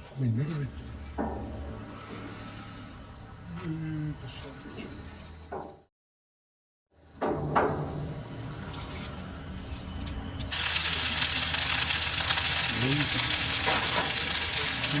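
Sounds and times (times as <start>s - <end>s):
harsh metalworking hiss: 10.5s - 15.0s
machine motor humming: 10.5s - 15.0s.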